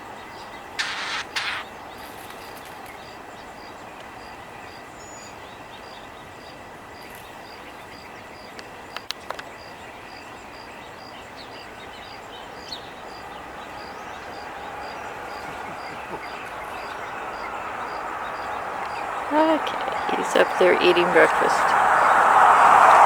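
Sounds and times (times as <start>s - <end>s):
burst of noise: 0.8s - 1.7s
sharp clicks: 0.8s - 1.7s.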